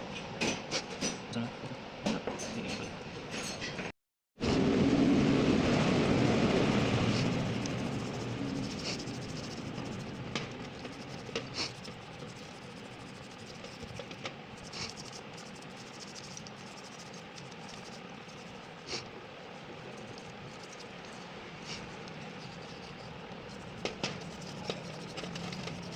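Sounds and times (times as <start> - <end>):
light scraping: 19.8 - 25.9.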